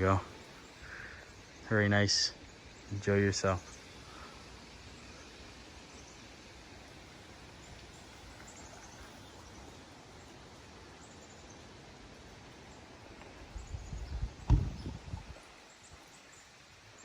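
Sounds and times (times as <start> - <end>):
outdoor background noise: 0.0 - 17.0.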